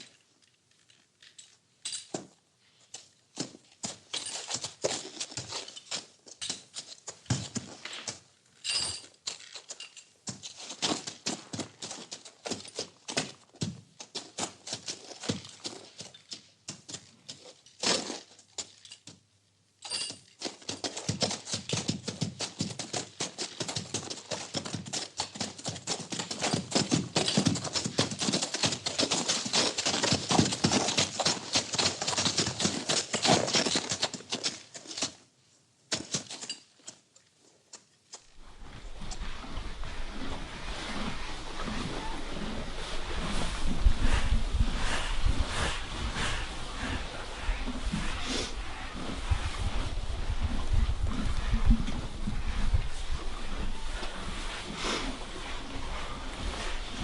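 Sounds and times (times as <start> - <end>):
dense continuous crackle: 0.0 - 1.4
hooves knocking on floor: 19.9 - 35.2.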